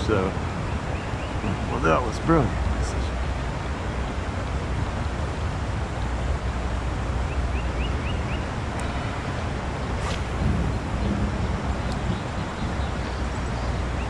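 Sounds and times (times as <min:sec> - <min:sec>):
creek water rushing: 0:01.4 - 0:14.0
wind on microphone: 0:02.6 - 0:14.0
quick rising chirps: 0:09.9 - 0:11.0.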